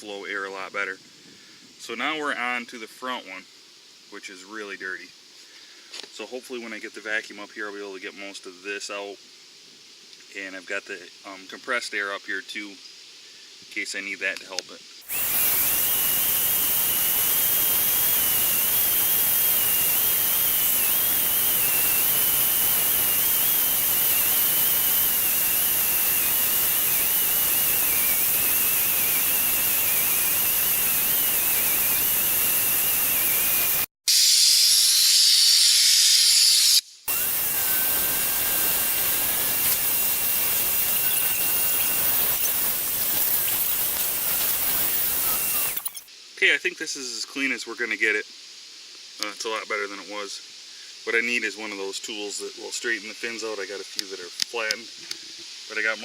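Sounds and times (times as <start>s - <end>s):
bright hiss: 15.0s - 56.0s
vacuum cleaner whining: 15.1s - 46.0s.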